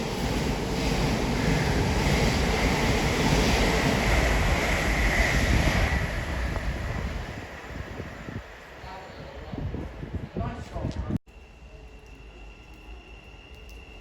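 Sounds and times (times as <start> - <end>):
train rushing past: 0.0 - 10.7
faint high whine: 11.3 - 14.0.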